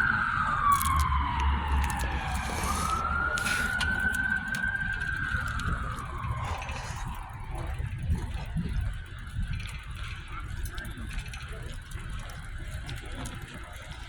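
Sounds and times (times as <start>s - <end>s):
siren wailing: 0.0s - 8.8s.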